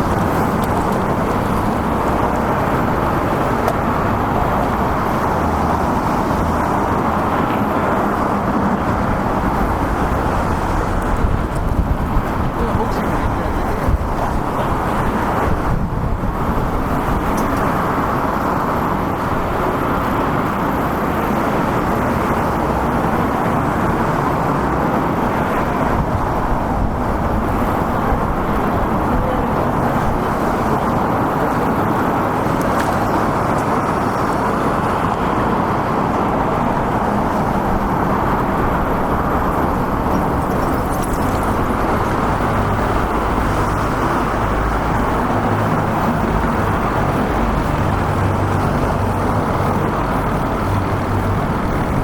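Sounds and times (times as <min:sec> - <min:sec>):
road traffic rushing: 0:00.0 - 0:52.0.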